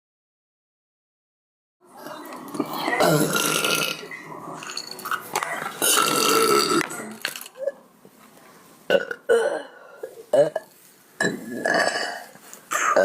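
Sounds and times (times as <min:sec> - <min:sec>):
woman burping: 0:02.3 - 0:04.1, 0:05.5 - 0:07.8, 0:08.9 - 0:13.0.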